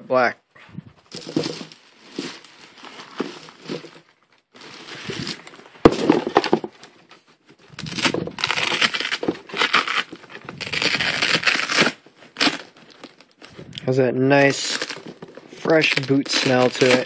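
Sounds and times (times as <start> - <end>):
packaging rustling and crinkling: 1.0 - 17.0.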